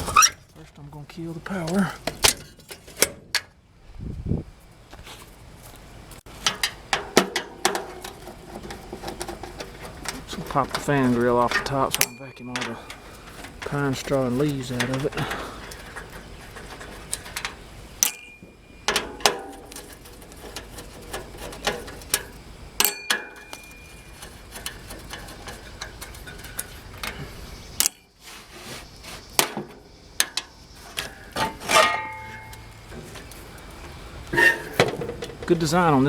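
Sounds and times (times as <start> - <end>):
metal grille clicking and clinking: 6.3 - 28.1, 29.4 - 36.0.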